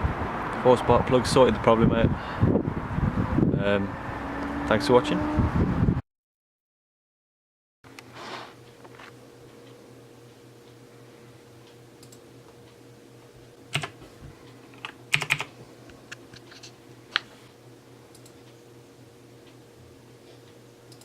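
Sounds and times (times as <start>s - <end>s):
faint steady hum: 7.9s - 21.0s.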